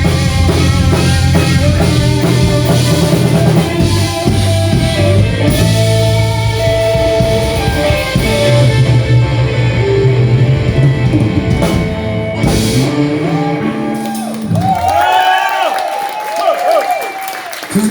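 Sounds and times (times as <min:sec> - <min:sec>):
blues-rock band playing: 0:00.0 - 0:15.5
electric guitar: 0:00.0 - 0:15.6.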